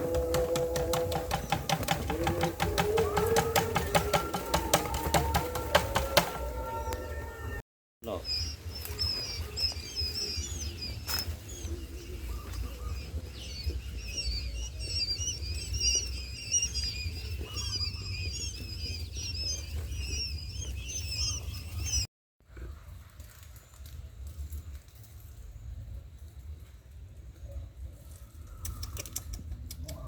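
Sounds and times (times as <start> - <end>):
small birds chirping: 8.0 - 22.1.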